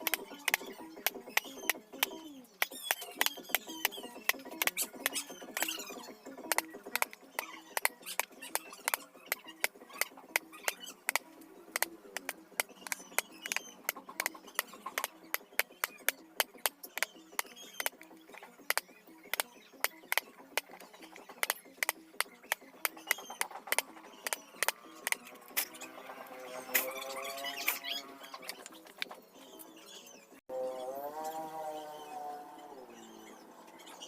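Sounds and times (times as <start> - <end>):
mallet tapping chisel into wood: 11.8 - 18.0.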